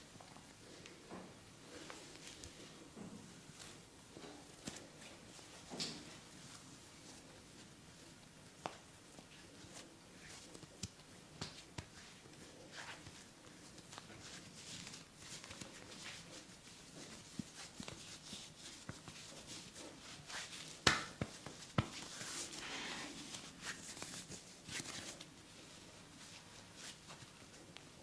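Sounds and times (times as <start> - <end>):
soft taps and rustles: 0.1 - 28.0
hands rubbing skin and hair: 8.6 - 28.0.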